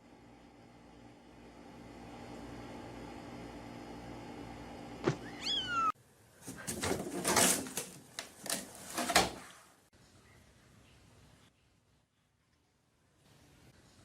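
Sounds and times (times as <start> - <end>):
cat meowing: 5.1 - 6.0.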